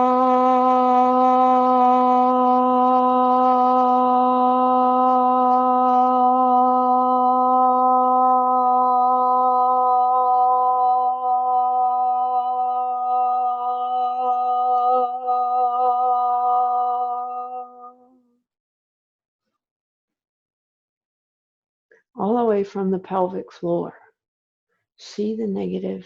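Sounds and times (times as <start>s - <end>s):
woman singing a long ah: 0.0s - 18.0s.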